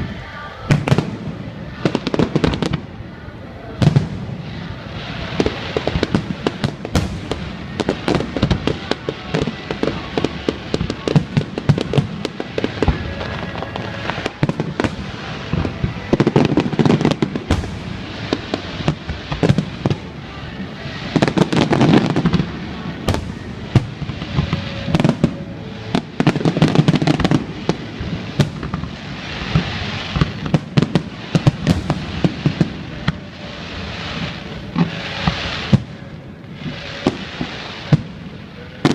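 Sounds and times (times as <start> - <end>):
fireworks bangs and crackles: 0.0 - 38.9
low fireworks booms: 0.0 - 38.9.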